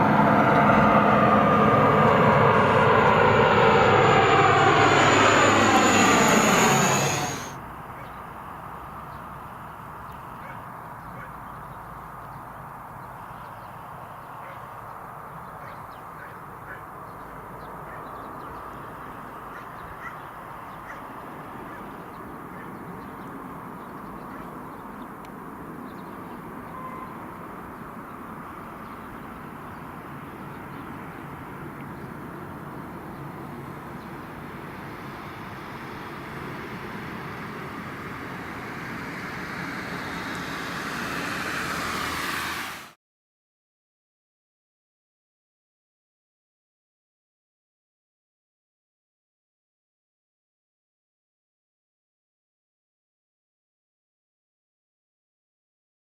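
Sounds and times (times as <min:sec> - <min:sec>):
distant turboprop engines rumbling: 0:00.0 - 0:43.0.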